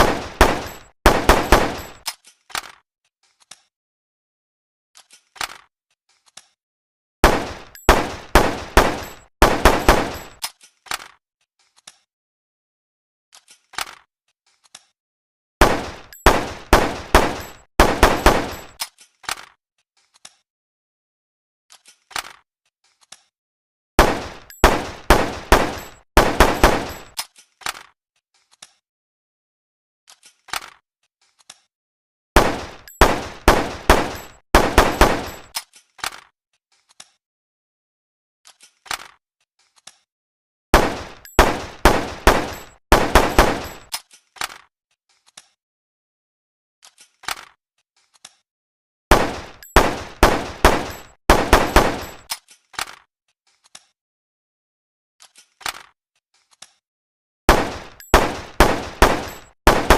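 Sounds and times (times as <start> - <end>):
handgun single shots: 0.0 - 2.0, 15.6 - 18.8, 24.0 - 27.2, 32.4 - 35.5, 40.8 - 43.9, 49.1 - 52.3, 57.5 - 59.9
rapid gunshots: 0.0 - 2.0, 7.2 - 10.4, 15.6 - 18.8, 24.0 - 27.2, 32.4 - 35.5, 40.8 - 43.9, 49.1 - 52.3, 57.5 - 59.9.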